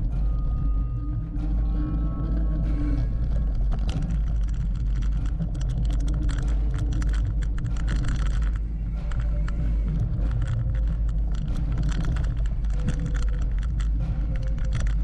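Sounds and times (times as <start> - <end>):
wind rumbling on microphone: 0.0 - 15.0
bike clattering rattles: 3.3 - 15.0.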